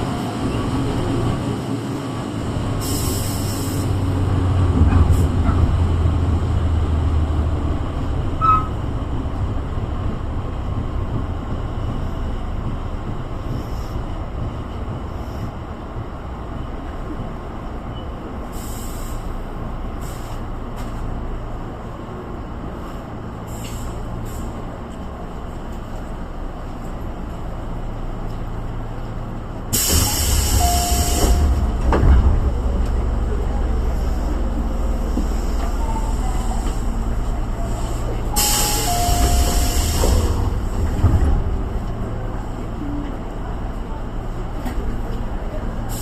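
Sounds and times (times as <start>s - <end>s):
train wheels rumbling on rails: 0.0s - 46.0s
high wheel squeal: 8.4s - 8.8s.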